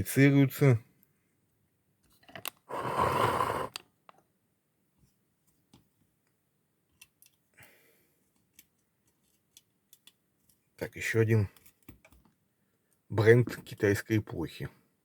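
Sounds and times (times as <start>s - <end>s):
light clicks and taps: 8.3s - 10.6s.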